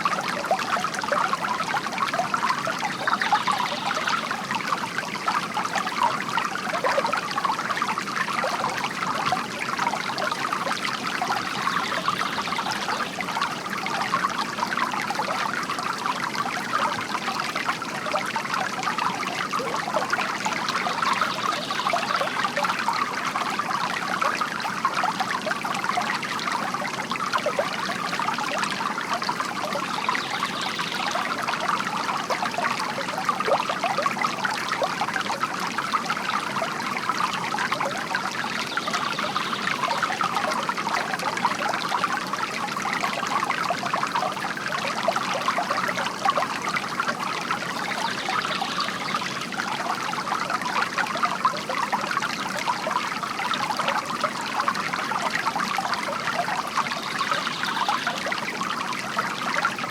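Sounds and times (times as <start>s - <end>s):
water trickling and splashing: 0.0s - 59.9s.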